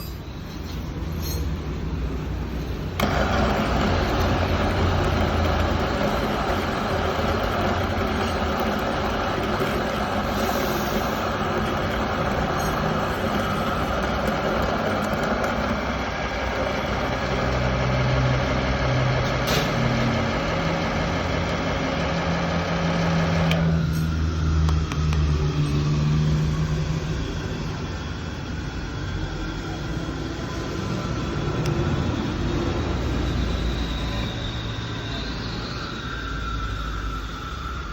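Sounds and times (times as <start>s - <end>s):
low motor hum: 1.7s - 28.9s
coffee grinder grinding: 2.3s - 23.7s.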